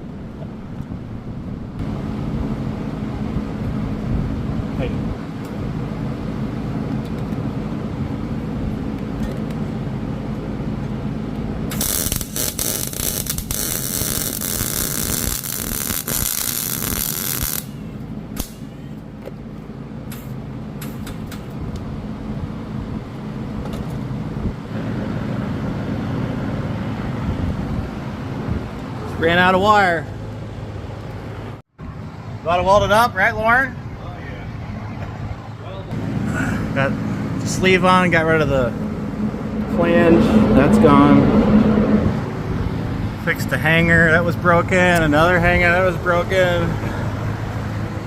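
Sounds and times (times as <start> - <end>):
steady low hum: 0.0 - 48.0
welder crackling hiss: 11.7 - 17.7.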